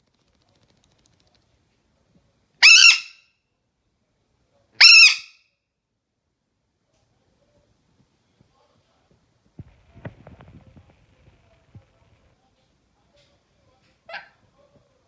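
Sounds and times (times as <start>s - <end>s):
parrot screeching calls: 2.6s - 3.2s, 4.8s - 5.4s.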